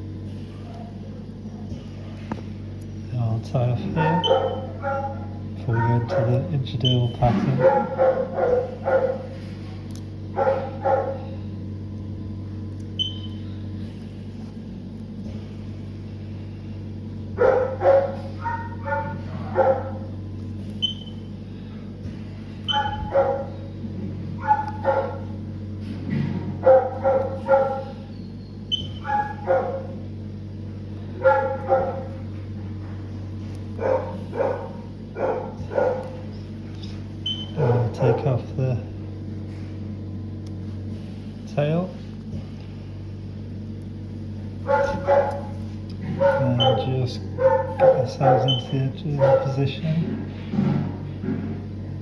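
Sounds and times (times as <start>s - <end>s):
low hum: 0.0s - 52.0s
dog barking and yipping: 4.0s - 6.4s, 7.6s - 9.4s, 10.4s - 11.3s, 17.4s - 20.1s, 22.7s - 23.6s, 24.4s - 25.3s, 26.6s - 28.0s, 28.7s - 30.0s, 31.2s - 32.2s, 33.8s - 36.3s, 37.3s - 38.4s, 44.6s - 49.6s.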